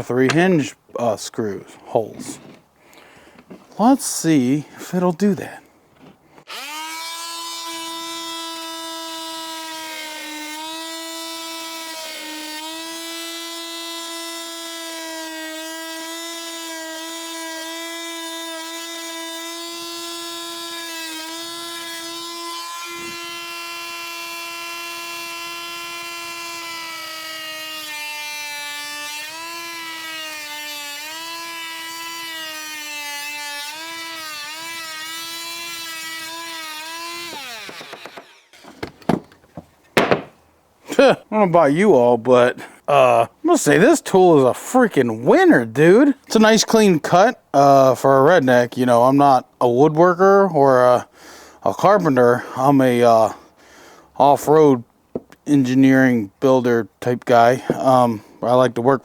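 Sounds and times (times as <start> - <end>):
oscillating multi-tool cutting wood: 6.4 - 40.4.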